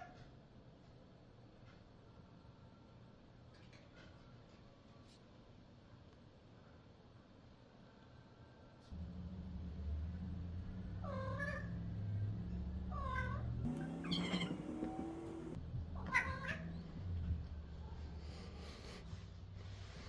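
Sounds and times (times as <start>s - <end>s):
low steady hum: 8.8s - 16.0s
cat meowing: 11.0s - 12.0s, 12.9s - 14.6s, 16.0s - 16.8s.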